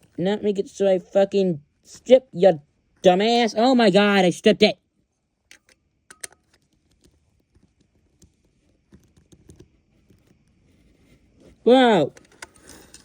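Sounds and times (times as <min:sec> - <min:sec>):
screwdriver and hardware clicks: 0:05.5 - 0:06.6.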